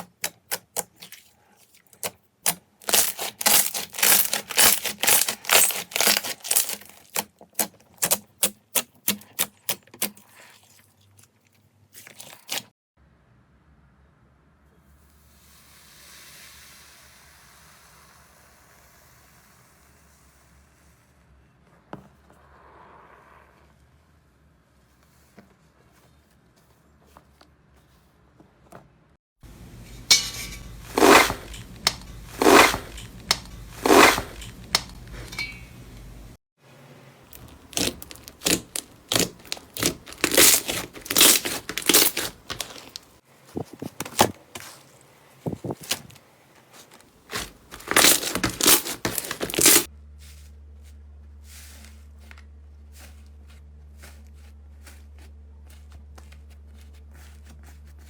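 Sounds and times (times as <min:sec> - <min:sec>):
slime crackling and crunching: 0:02.8 - 0:08.2, 0:30.6 - 0:35.4, 0:37.3 - 0:49.9.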